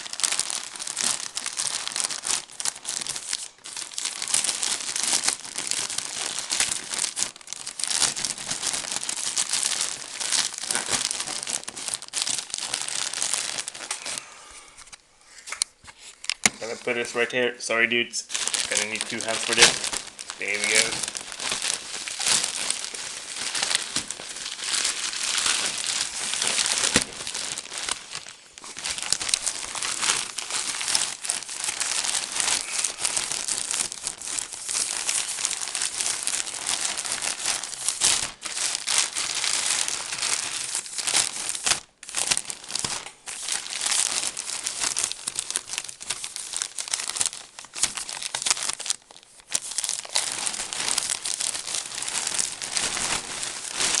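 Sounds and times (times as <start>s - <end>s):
packaging torn and crumpled: 0.0s - 15.0s, 16.2s - 54.0s.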